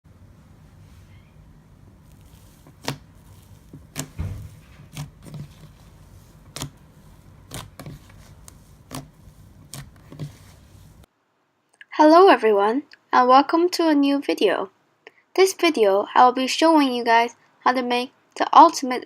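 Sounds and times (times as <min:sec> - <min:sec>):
low steady hum: 0:00.1 - 0:12.0.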